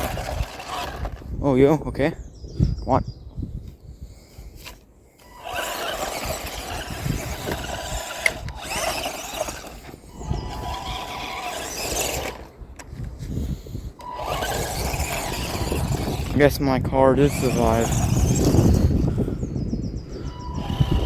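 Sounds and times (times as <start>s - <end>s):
toy car motor whining: 0.0s - 1.3s, 4.6s - 12.6s, 13.3s - 19.4s, 20.2s - 21.0s.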